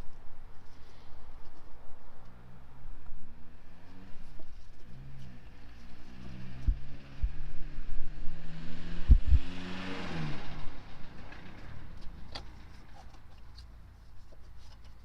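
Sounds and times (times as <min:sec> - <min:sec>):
car passing by: 0:03.3 - 0:12.1.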